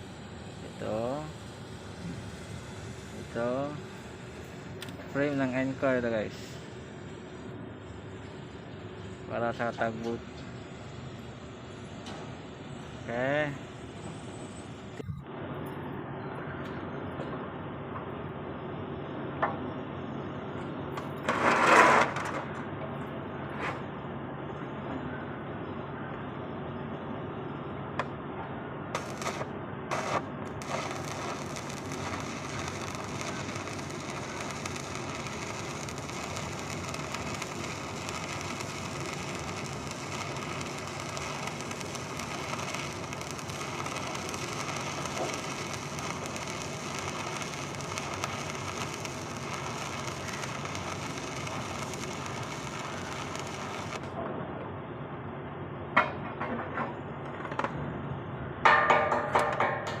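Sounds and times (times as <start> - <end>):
arc welding crackle and hiss: 0.0 - 15.2, 20.5 - 22.6, 28.9 - 54.2.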